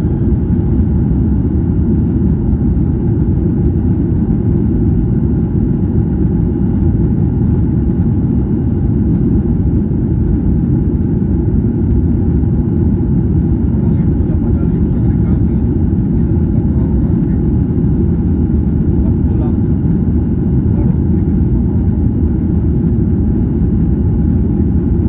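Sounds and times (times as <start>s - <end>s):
airliner cabin engine rumble: 0.0s - 25.0s.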